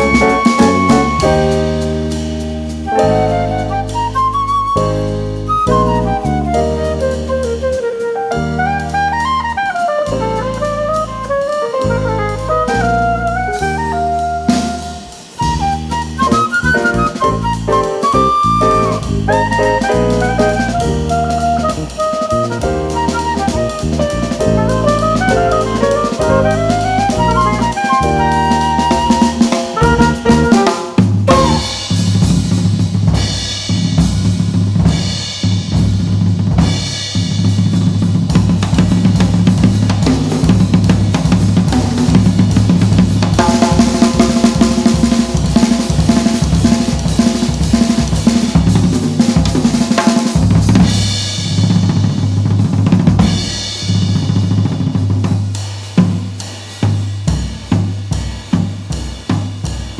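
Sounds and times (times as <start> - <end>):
woodwind and piano melody: 0.0 - 32.3, 38.4 - 51.6
bass guitar: 0.0 - 53.5
drum kit with rimshots: 0.0 - 59.9.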